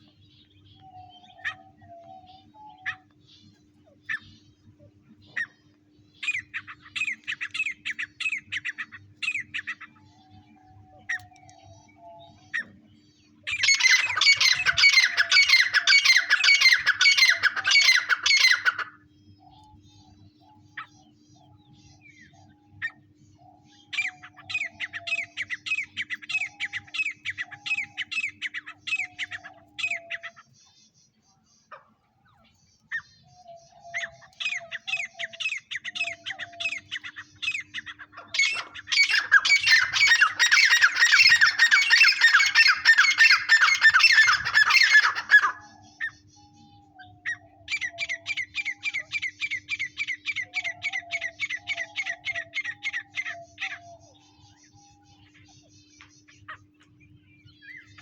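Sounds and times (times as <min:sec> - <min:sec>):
francolin calling: 0:13.4 - 0:30.9, 0:32.8 - 0:58.0.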